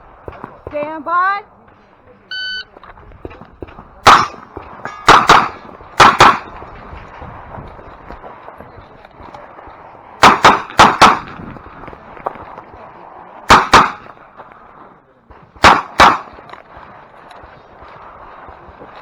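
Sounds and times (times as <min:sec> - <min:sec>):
revolver shots: 0:04.0 - 0:06.6.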